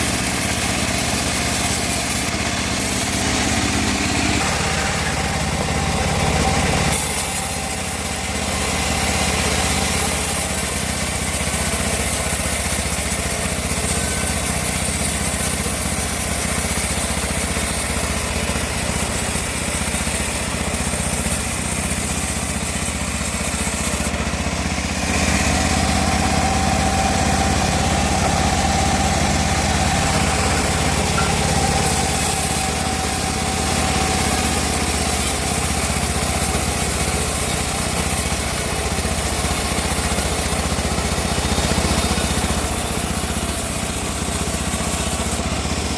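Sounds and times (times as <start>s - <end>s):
band sawmill cutting log: 0.0s - 45.9s.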